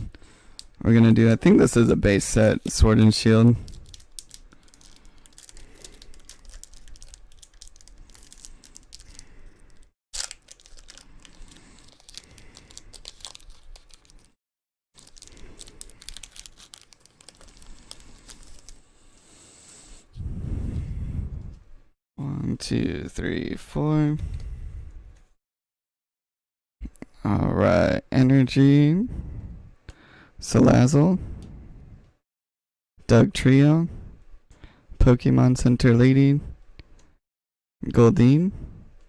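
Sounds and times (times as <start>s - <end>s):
foil pack tearing and crinkling: 3.6s - 14.4s, 15.0s - 18.8s.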